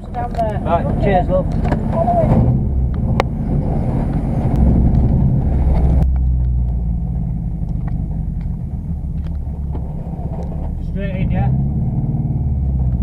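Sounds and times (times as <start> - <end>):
car engine low rumble: 0.0 - 13.0.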